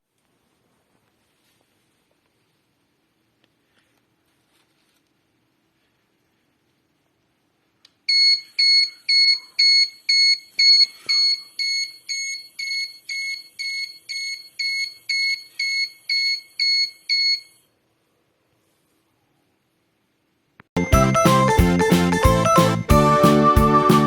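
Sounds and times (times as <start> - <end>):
fire alarm buzzer beeping: 8.1 - 17.6.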